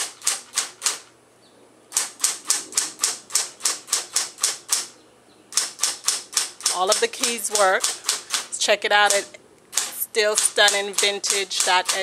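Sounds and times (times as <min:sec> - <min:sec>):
typewriter keys striking: 0:00.0 - 0:01.1, 0:05.6 - 0:12.0.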